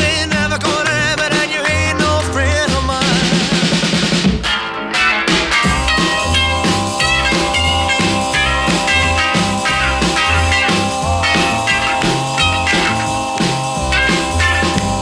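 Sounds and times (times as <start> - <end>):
electric guitar: 0.0 - 15.0
pounding drum beat: 0.0 - 15.0
held chord: 5.6 - 15.0.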